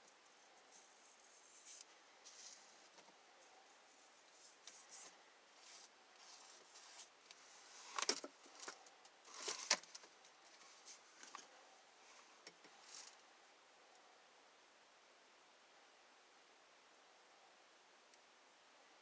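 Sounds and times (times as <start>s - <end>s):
soft rustles: 0.0s - 13.2s.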